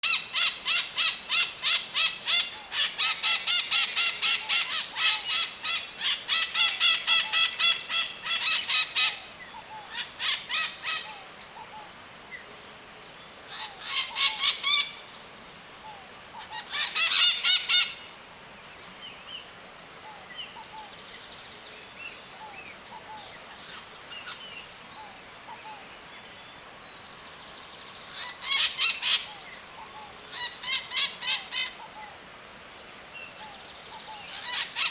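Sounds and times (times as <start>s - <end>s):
parakeets screeching: 34.3s - 34.9s.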